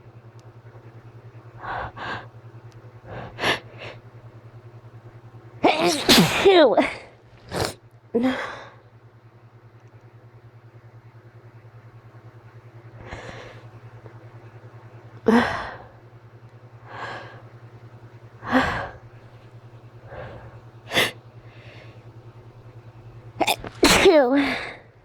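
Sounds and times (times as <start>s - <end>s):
gasping in-breaths: 1.6s - 2.4s, 3.1s - 4.1s, 13.0s - 13.7s, 18.4s - 19.2s, 20.0s - 22.1s, 23.4s - 24.9s
person sneezing: 5.6s - 8.4s, 20.9s - 21.2s, 23.4s - 24.8s.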